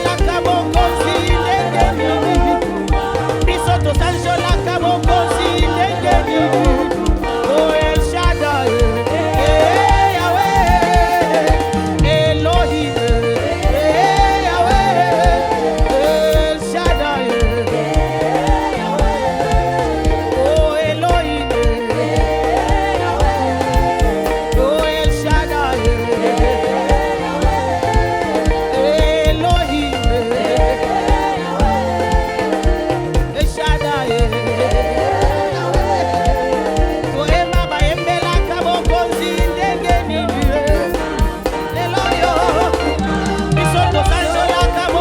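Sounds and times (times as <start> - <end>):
bass: 0.0 - 45.0
drums: 0.0 - 45.0
keyboard: 0.0 - 45.0
voices singing: 0.0 - 45.0.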